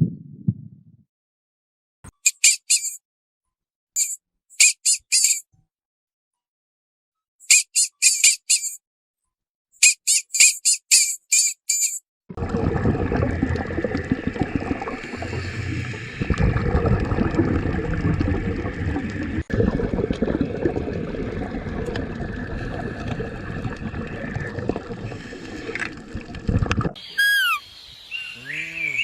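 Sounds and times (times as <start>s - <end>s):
water splashing and gurgling: 12.3s - 27.6s
falling whistle-like animal call: 27.0s - 29.0s.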